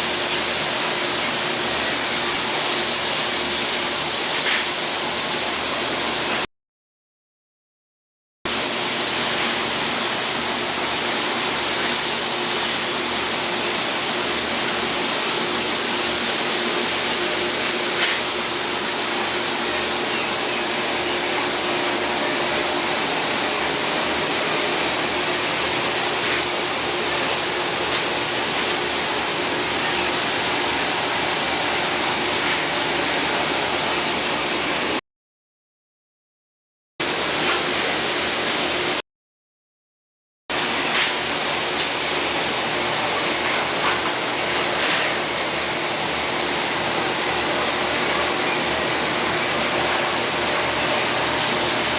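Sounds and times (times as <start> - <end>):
hiss of spraying water: 0.0 - 6.4, 8.5 - 35.0
faint machine hum: 8.5 - 35.0, 40.5 - 51.9.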